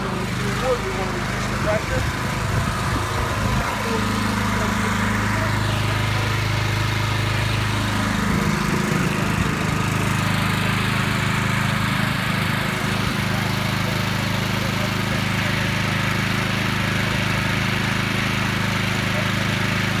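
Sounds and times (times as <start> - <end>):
pressure washer engine running: 0.0 - 20.0.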